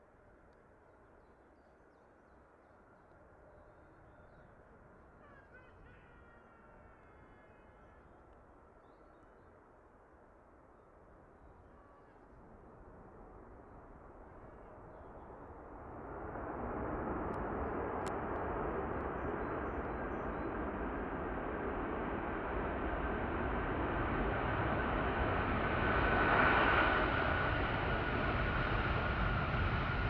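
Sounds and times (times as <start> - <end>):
jet engine roar: 15.4 - 30.0.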